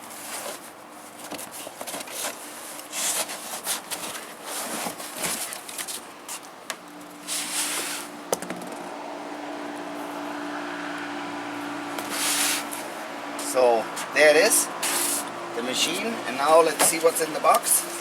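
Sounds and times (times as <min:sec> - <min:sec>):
cardboard box rubbing and scraping: 0:00.0 - 0:06.0, 0:07.2 - 0:08.1, 0:12.0 - 0:12.9, 0:14.8 - 0:15.3.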